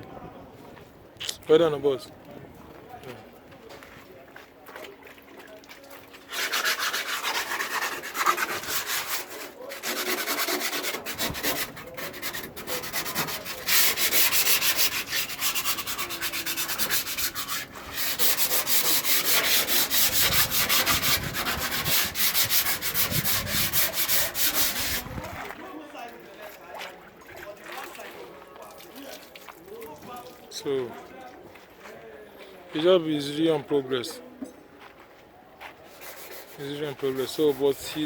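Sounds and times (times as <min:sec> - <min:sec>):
sandpaper scraping body filler: 0:06.3 - 0:25.2, 0:35.9 - 0:38.0.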